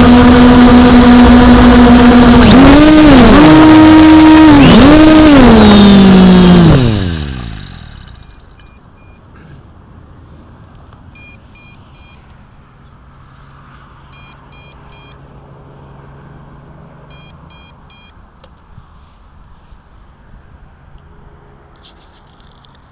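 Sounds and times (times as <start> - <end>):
quadcopter motors whining: 0.0 - 8.7
short electronic beeps: 8.2 - 9.3, 11.1 - 12.2, 14.1 - 15.2, 17.1 - 18.2.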